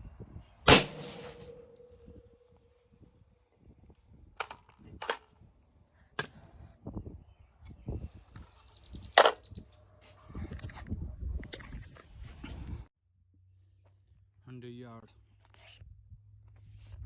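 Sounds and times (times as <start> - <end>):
rifle shots: 0.7 - 2.3.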